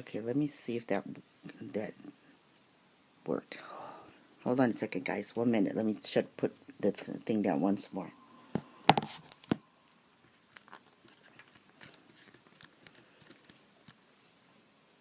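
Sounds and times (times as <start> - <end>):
object knocking on hard surface: 8.5 - 9.6.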